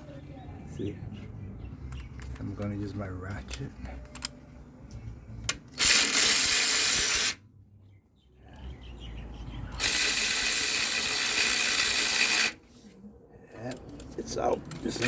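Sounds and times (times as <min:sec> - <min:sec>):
socket ratchet clicking: 0:05.8 - 0:07.4.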